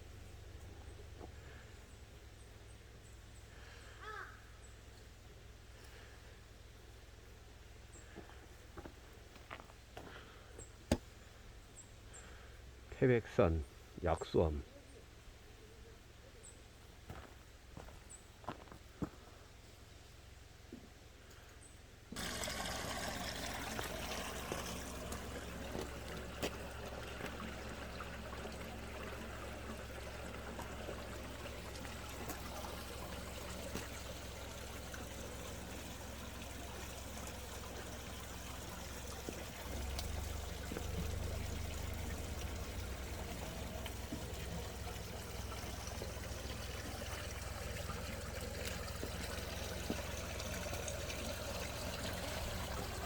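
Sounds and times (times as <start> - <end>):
water pouring and splashing: 22.2 - 53.0.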